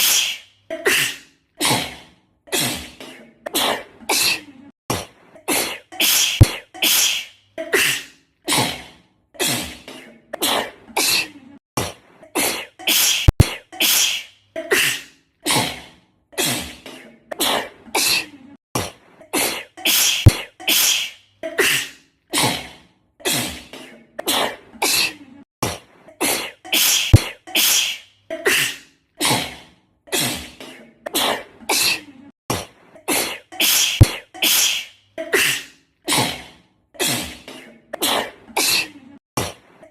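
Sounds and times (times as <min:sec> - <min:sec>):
girl sneezing: 0:00.0 - 0:01.9, 0:05.5 - 0:08.7, 0:12.4 - 0:15.7, 0:19.3 - 0:22.6, 0:26.2 - 0:29.4, 0:33.1 - 0:36.3.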